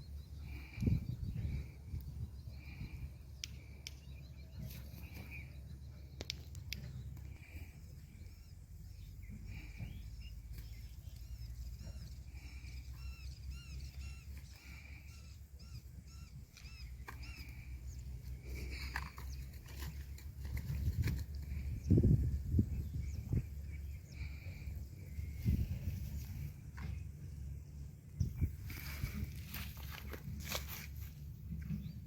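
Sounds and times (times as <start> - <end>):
steady low rumble: 0.0 - 32.0.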